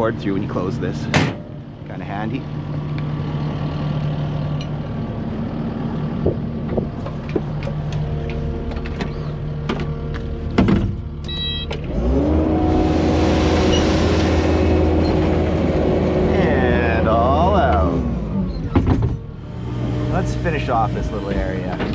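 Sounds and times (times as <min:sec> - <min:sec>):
machine engine idling: 0:12.4 - 0:18.6.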